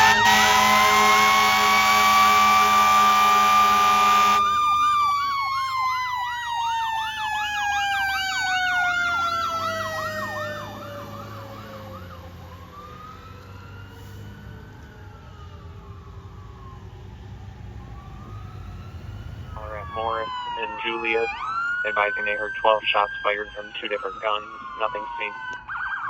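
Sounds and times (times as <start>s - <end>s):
fire engine air horn: 0.0s - 4.9s
siren sliding down in pitch: 0.0s - 16.9s, 17.8s - 26.0s
siren warbling rapidly: 19.6s - 26.0s.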